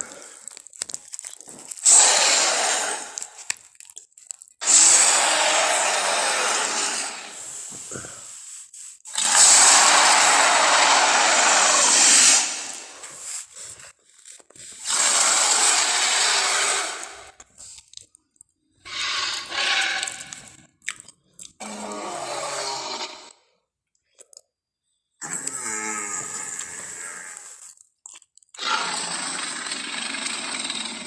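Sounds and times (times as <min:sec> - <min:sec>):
dinosaur roaring: 0:01.8 - 0:03.2, 0:04.6 - 0:08.1, 0:09.2 - 0:13.0, 0:14.8 - 0:17.4, 0:21.6 - 0:23.4, 0:25.2 - 0:27.5
high-pitched growl: 0:01.8 - 0:03.4, 0:04.6 - 0:08.1, 0:09.1 - 0:13.0, 0:21.6 - 0:23.4, 0:25.2 - 0:27.6.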